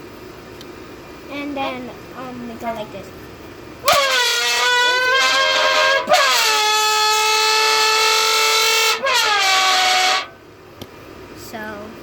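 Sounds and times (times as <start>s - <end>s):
can blown like a horn: 3.8s - 10.4s.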